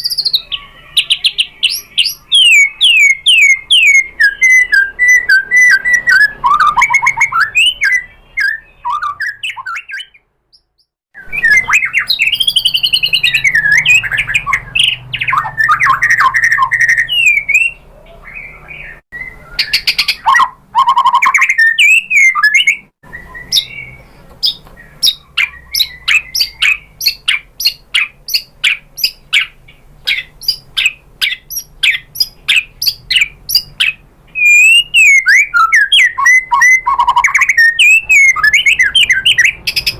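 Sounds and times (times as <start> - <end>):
songbird whistling song: 0.0 - 39.9.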